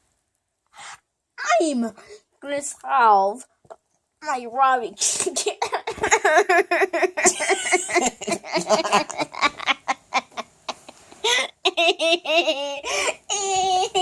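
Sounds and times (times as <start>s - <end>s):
child laughing: 5.5s - 14.0s.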